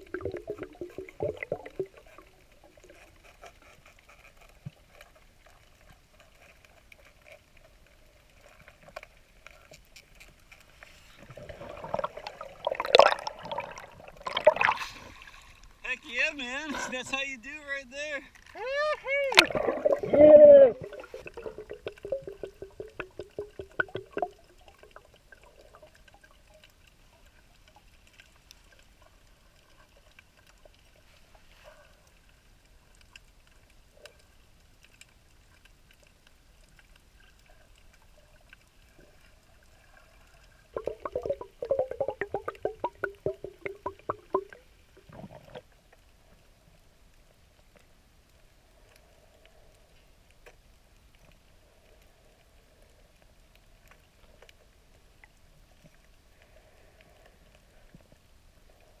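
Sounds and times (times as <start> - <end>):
water gurgling and bubbling: 0.0 - 3.0, 11.2 - 15.5, 19.3 - 26.3, 40.1 - 45.7.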